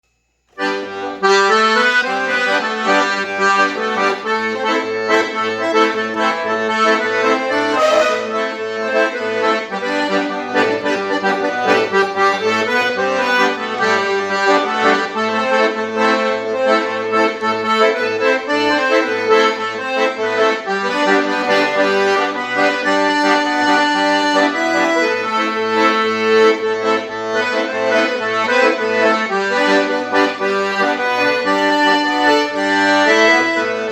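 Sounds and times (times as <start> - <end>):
sustained reedy melody: 0.6 - 19.6.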